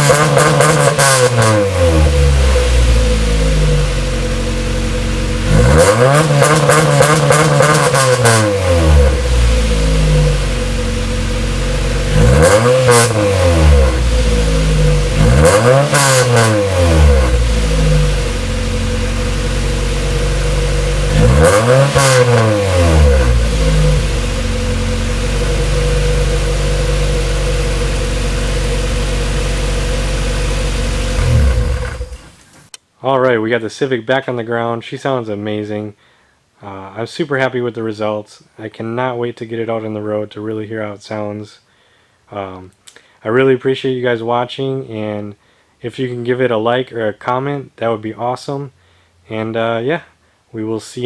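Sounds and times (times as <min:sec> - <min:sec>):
car engine idling and revving: 0:00.0 - 0:32.5.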